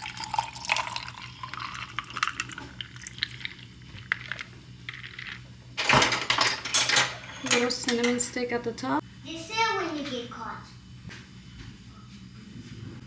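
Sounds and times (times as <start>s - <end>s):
ice cubes clinking in glass: 0.0s - 7.0s.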